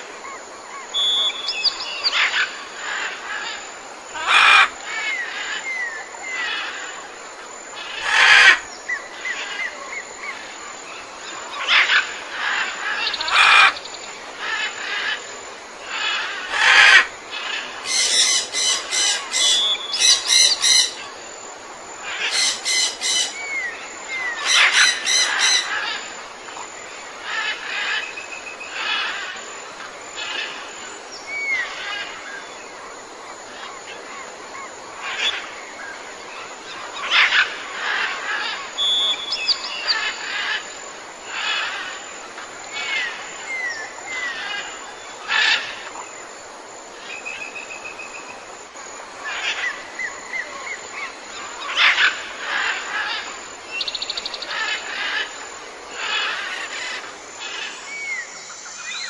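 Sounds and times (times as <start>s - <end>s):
steady high hiss: 0.0s - 59.0s
birds calling: 0.3s - 7.0s, 7.8s - 21.3s, 22.0s - 32.8s, 33.5s - 46.2s, 49.1s - 59.0s
curved whistles: 1.0s - 1.7s.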